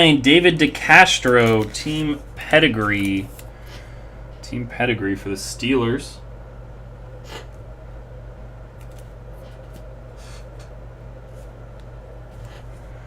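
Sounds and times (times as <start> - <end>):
low electrical hum: 0.0 - 13.0
trading cards rustling: 0.4 - 3.5.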